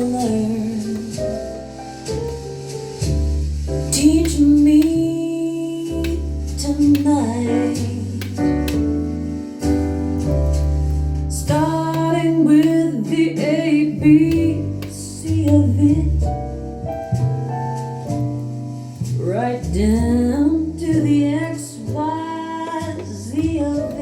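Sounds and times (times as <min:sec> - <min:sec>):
woman singing: 0:00.0 - 0:01.4, 0:03.9 - 0:08.8, 0:11.3 - 0:16.4, 0:19.2 - 0:24.0
bass: 0:00.0 - 0:24.0
piano chords: 0:00.0 - 0:24.0.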